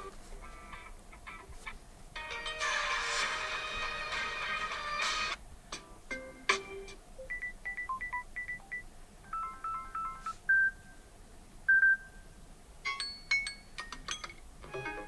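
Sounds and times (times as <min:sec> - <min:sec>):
electronic ringtone beeps: 0:07.2 - 0:10.8.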